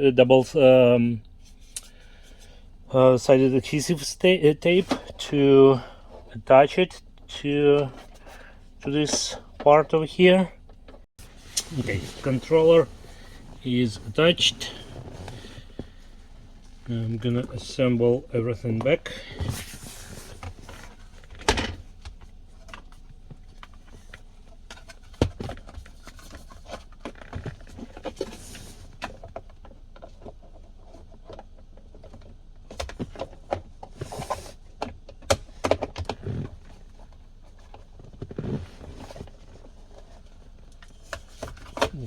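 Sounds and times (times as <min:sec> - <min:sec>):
rustling: 0:11.2 - 0:18.0.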